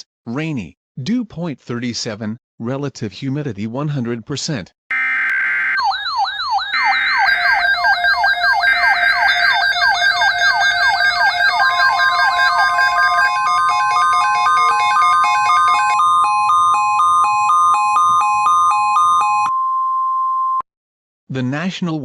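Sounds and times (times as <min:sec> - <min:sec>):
buzzy data bursts: 0:04.9 - 0:16.0
steady alert tone: 0:04.9 - 0:16.2
synthesized siren sweeps: 0:04.9 - 0:17.0
two-note hi-lo siren: 0:04.9 - 0:19.6.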